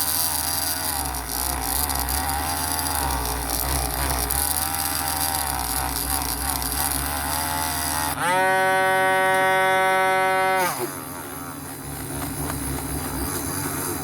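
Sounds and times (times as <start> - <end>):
wire brush scrubbing metal: 0.0 - 8.2
high motor whine: 0.0 - 14.0.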